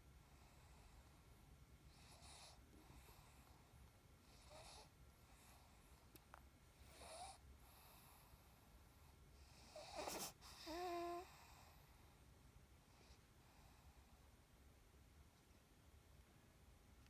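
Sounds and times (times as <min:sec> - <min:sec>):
faint snoring: 0:01.9 - 0:05.8, 0:06.8 - 0:08.6, 0:09.4 - 0:12.0
soft breath: 0:06.8 - 0:14.4.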